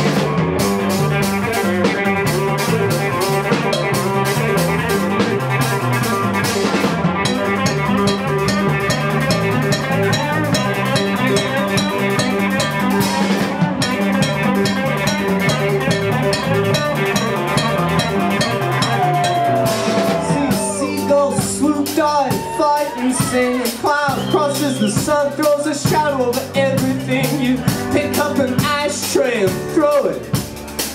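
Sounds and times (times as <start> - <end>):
electric guitar: 0.0 - 22.6
drum kit beat: 0.0 - 30.9
walking bass line: 0.0 - 30.9.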